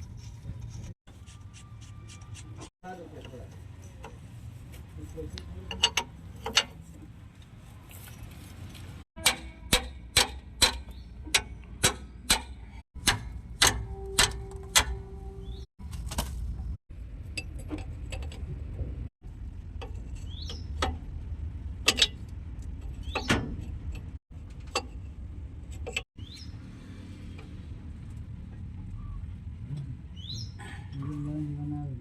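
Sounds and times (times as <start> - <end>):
low steady rumble: 12.6 - 26.0
bird chirps: 15.2 - 15.7, 20.2 - 20.8, 26.2 - 26.6, 30.1 - 30.6.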